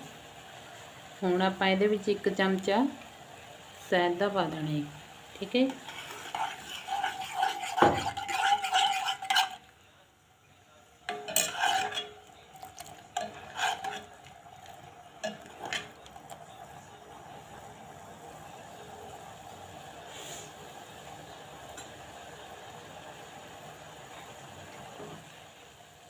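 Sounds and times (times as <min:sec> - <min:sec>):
faint steady hiss: 0:00.0 - 0:07.0
spoon clinking against pot: 0:11.1 - 0:16.2.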